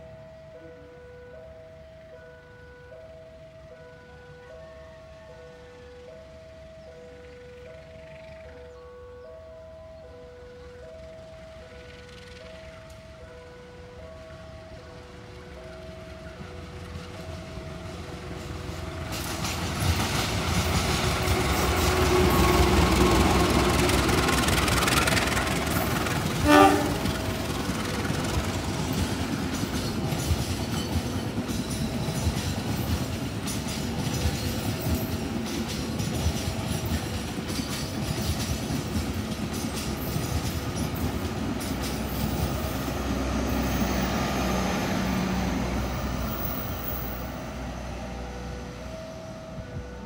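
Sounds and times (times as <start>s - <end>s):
train wheels clattering over rail joints: 18.2s - 47.2s
train horn blast: 25.8s - 27.6s.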